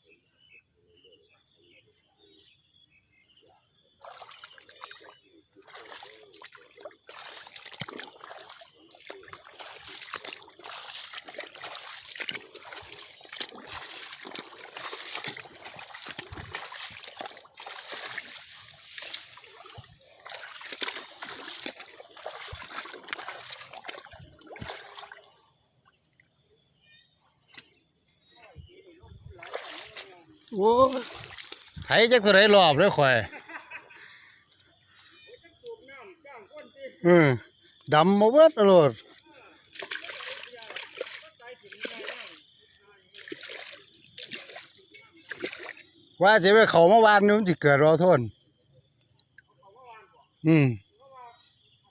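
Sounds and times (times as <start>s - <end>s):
water splashing and sloshing: 3.9s - 26.6s, 27.2s - 35.8s, 38.8s - 47.0s.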